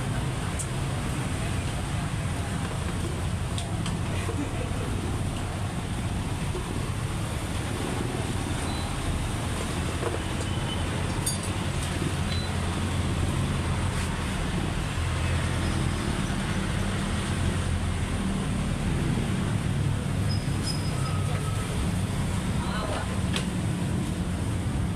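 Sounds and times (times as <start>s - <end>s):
road traffic engine rumble: 0.0s - 24.9s.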